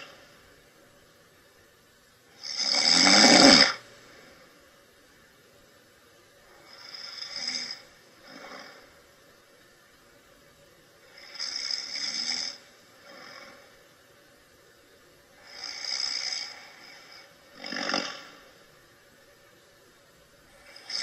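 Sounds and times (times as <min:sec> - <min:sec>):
person snoring: 0:02.4 - 0:03.8, 0:06.6 - 0:09.0, 0:11.1 - 0:13.8, 0:15.4 - 0:18.5, 0:20.6 - 0:21.0.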